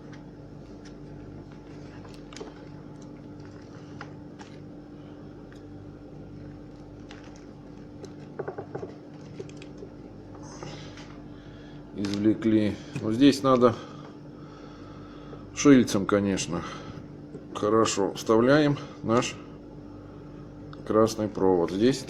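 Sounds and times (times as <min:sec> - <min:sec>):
steady low hum: 0:00.0 - 0:22.0
hands clicking and scratching plastic: 0:06.6 - 0:10.0.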